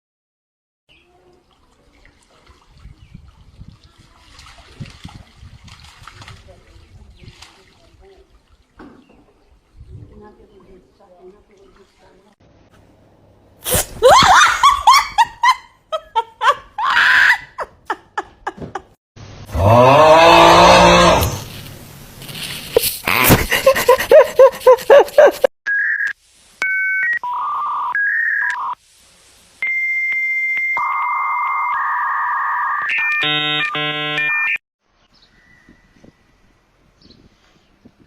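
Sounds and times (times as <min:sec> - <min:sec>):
loud rising pitched cry: 0:19.5 - 0:21.4
electronic beeps and tones: 0:29.6 - 0:34.6.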